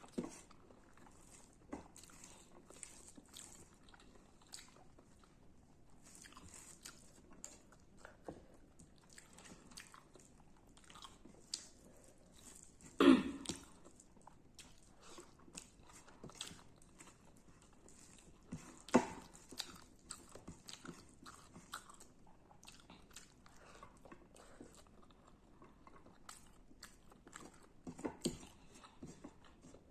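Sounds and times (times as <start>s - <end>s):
chewing and crunching: 0.0s - 29.9s.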